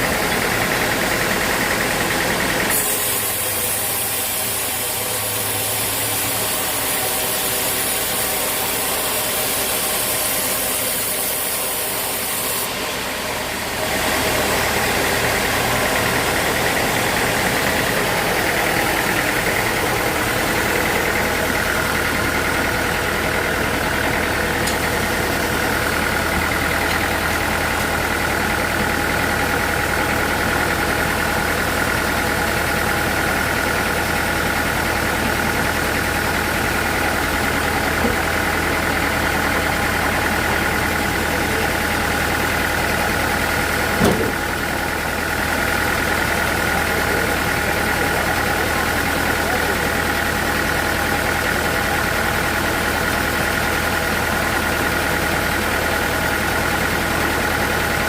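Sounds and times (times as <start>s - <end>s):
sawmill machinery droning: 0.0s - 58.0s
short knock: 44.0s - 44.4s.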